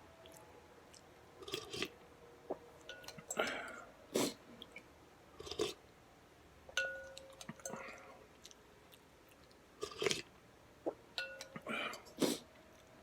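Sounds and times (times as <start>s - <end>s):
utensil clinking against bowl: 6.7s - 7.8s, 11.2s - 12.2s.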